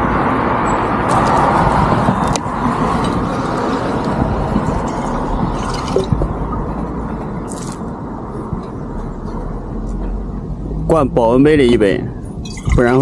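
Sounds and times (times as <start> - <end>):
outdoor noise rushing: 0.0 - 13.0
water splashing and dripping: 4.8 - 6.7.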